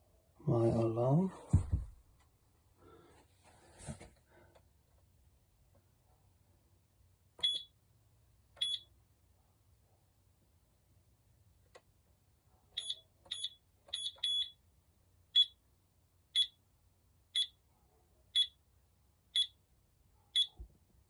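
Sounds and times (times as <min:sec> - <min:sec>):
alarm keypad beeps: 0:07.4 - 0:07.7, 0:08.6 - 0:08.9, 0:12.8 - 0:14.6, 0:16.4 - 0:16.6, 0:17.4 - 0:17.6, 0:19.4 - 0:19.6.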